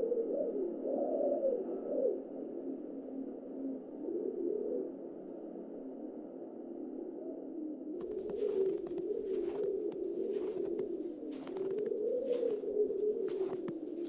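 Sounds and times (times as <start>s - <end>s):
irregular crunches: 8.0s - 14.0s
wind howling: 8.0s - 14.0s.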